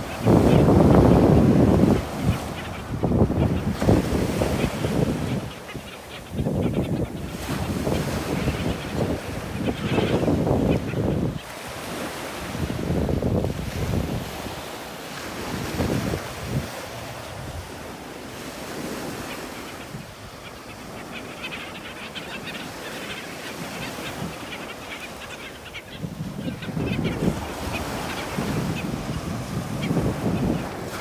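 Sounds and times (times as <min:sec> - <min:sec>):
wind buffeting microphone: 0:00.0 - 0:11.4, 0:12.0 - 0:14.6, 0:25.9 - 0:31.0.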